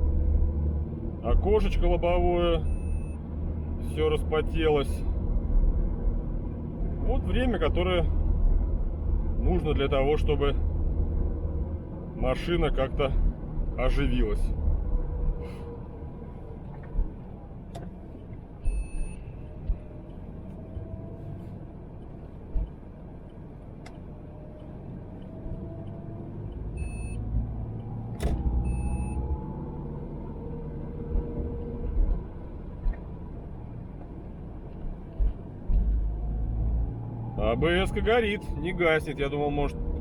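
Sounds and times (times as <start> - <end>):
engine and road rumble: 0.0 - 40.0
short electronic beeps: 2.6 - 3.2, 18.6 - 19.3, 26.8 - 27.2, 28.6 - 29.3.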